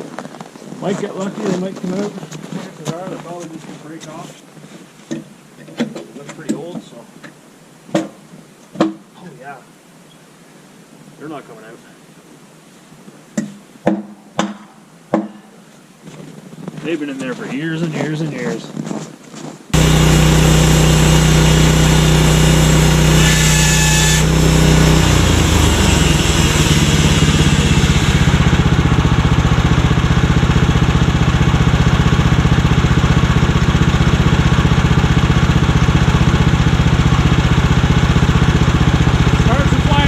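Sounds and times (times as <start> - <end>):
sawmill engine running: 19.8 - 40.0
high metallic blade screech: 19.9 - 26.0.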